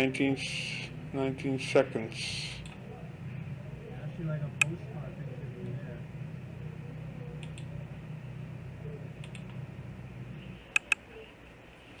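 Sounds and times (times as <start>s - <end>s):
low steady hum: 0.0s - 12.0s
computer mouse clicking: 2.6s - 2.8s, 7.4s - 7.7s, 9.2s - 9.6s, 10.7s - 11.1s.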